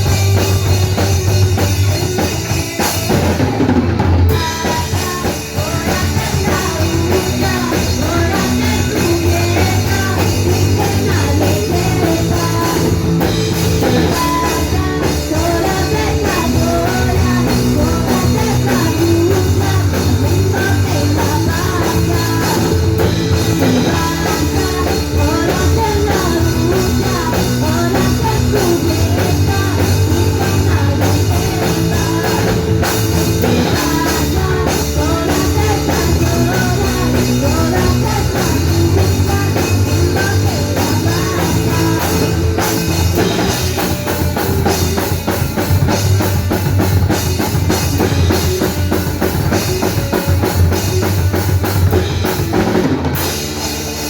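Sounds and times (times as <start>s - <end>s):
rock band playing live: 0.0s - 54.0s.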